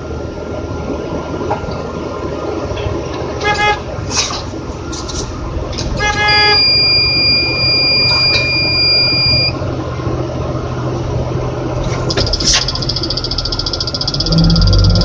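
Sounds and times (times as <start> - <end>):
low engine rumble: 0.0 - 12.4, 13.1 - 15.0
short horn toot: 3.4 - 3.8, 6.0 - 6.8
high alarm beep: 6.0 - 9.6, 12.2 - 15.0.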